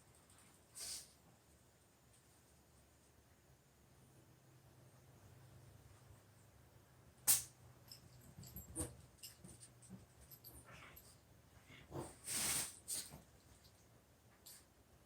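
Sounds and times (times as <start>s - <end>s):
parrot sneezing: 0.8s - 1.2s, 12.3s - 12.8s.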